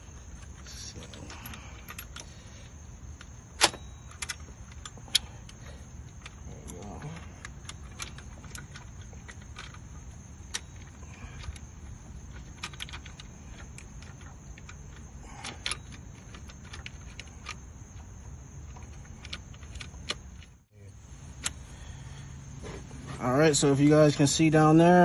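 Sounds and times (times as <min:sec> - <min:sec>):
steady low hum: 0:00.0 - 0:25.0
hand tools clicking and tapping: 0:03.2 - 0:18.0.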